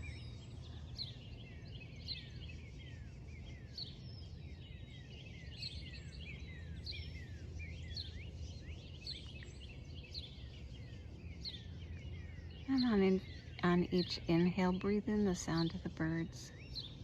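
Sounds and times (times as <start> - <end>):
songbirds chirping: 0.0 - 17.0
steady low rumble: 0.0 - 17.0.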